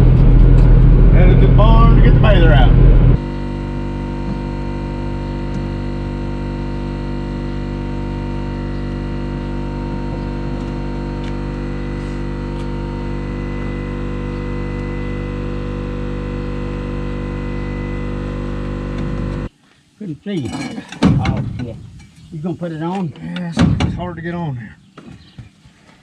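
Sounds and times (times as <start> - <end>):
motor running steadily: 0.0 - 19.5.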